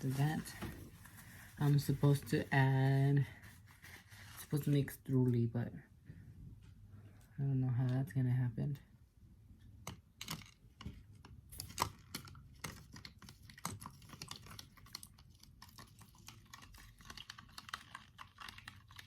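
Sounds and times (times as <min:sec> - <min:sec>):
spoon stirring slime: 0:11.2 - 0:19.0.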